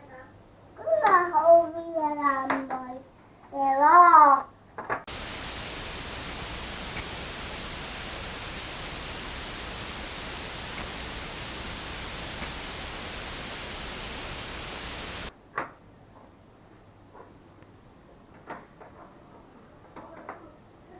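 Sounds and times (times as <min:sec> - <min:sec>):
loud static hiss: 0:05.1 - 0:15.3.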